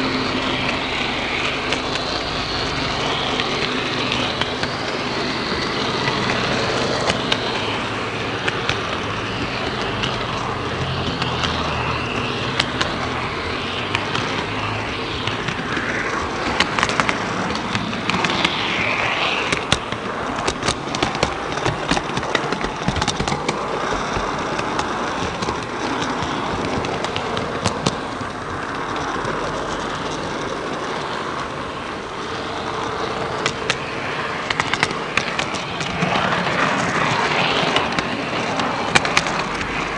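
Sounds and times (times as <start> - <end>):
model train wheels rumbling on rail: 0.0 - 39.9
rail joint clicks: 0.0 - 39.9.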